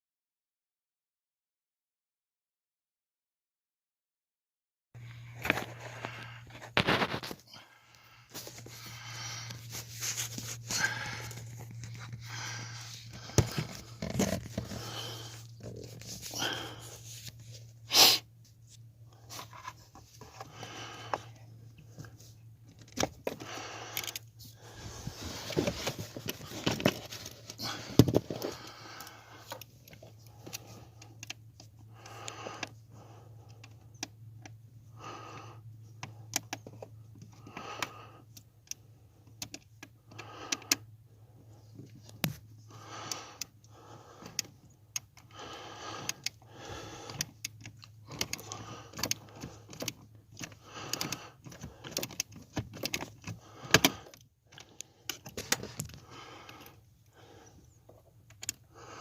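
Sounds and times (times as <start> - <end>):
low steady hum: 5.0 - 59.0
parts and tools clicking and rattling: 8.3 - 17.6, 19.2 - 32.8, 43.4 - 58.7.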